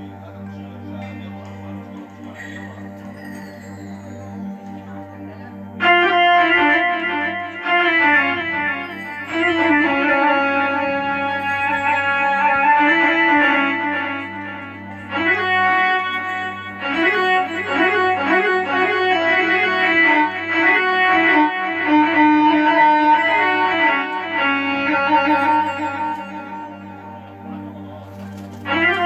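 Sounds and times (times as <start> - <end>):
steady low drone: 0.0 - 22.2
keyboard rebab melody: 0.0 - 29.0.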